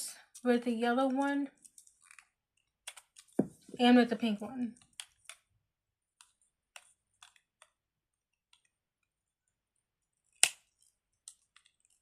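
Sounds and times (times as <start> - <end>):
sharp plastic snap: 10.4 - 10.7.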